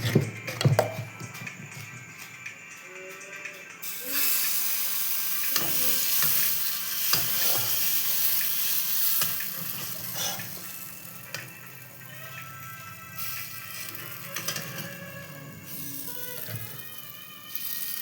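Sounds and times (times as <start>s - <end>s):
food sizzling in hot oil: 3.8s - 18.0s.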